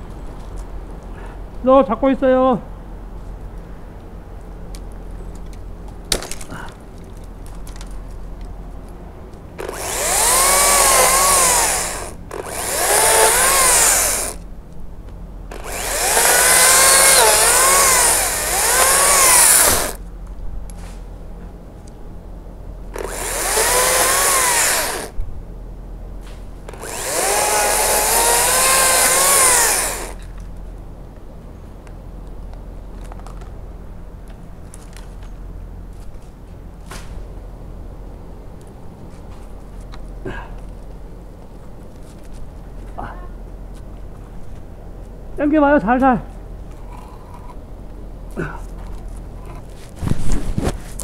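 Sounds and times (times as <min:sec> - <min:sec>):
chainsaw cutting wood: 0:09.6 - 0:14.4, 0:15.5 - 0:20.0, 0:22.9 - 0:25.2, 0:26.7 - 0:30.3.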